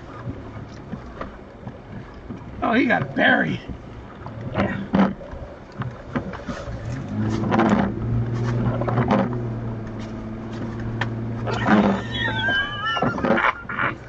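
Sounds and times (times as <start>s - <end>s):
vehicle engine running: 3.7s - 14.0s.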